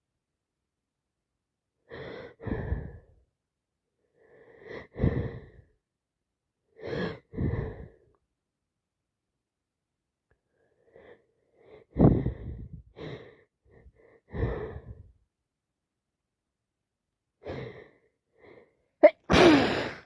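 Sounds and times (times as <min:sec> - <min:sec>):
woman sneezing: 0:19.0 - 0:20.0.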